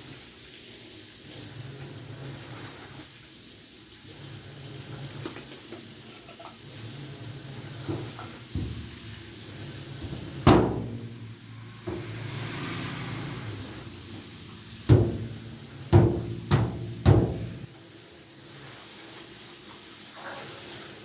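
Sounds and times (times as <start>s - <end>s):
banging on washing machine cabinet: 7.7s - 12.6s, 14.0s - 17.7s.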